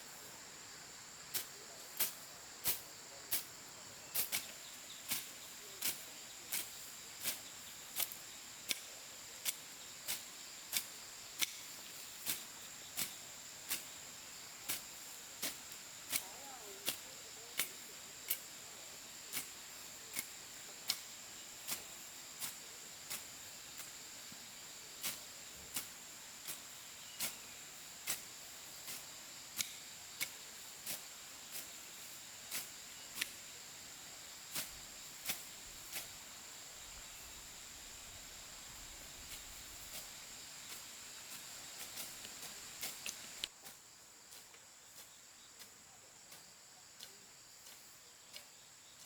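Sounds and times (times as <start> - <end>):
insects droning: 0.0 - 49.0.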